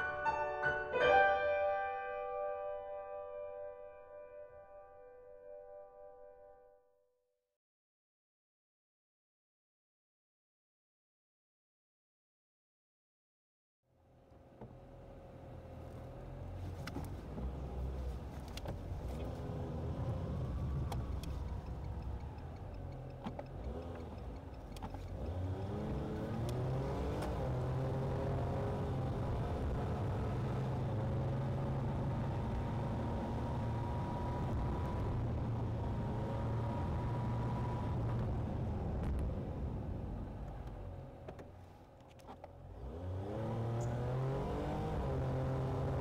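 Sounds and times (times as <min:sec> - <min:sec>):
car engine: 0:14.0 - 0:46.0
road noise inside car: 0:14.0 - 0:46.0.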